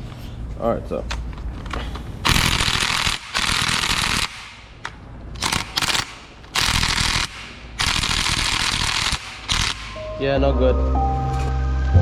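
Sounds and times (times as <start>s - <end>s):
power wrench hammering: 2.2s - 4.6s, 5.4s - 10.0s.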